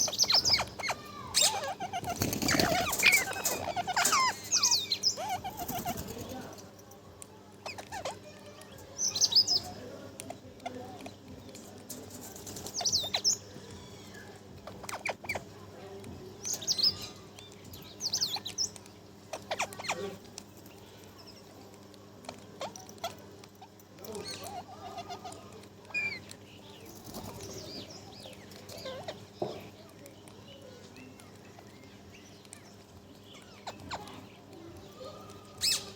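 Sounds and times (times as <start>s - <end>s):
parrot chirping: 0.0s - 6.2s, 18.0s - 20.2s, 22.3s - 26.3s.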